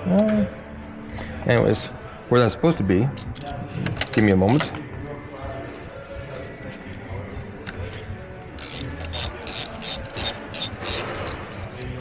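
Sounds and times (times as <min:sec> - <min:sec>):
ratchet wrench clicking: 0:03.2 - 0:03.6, 0:04.5 - 0:04.8, 0:08.6 - 0:11.4.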